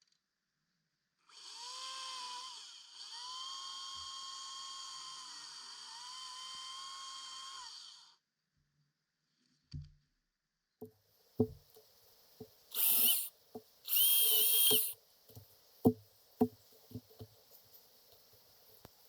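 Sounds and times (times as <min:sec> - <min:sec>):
knocks and clunks: 0:10.8 - 0:11.8
electric chainsaw motor whirring: 0:12.7 - 0:13.3, 0:13.9 - 0:15.0.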